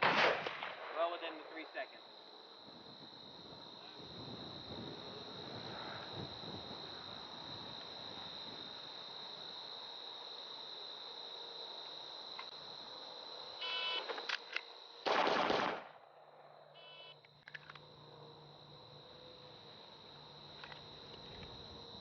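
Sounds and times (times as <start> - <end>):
pistol fire burst: 0.0 - 1.6, 15.0 - 16.1.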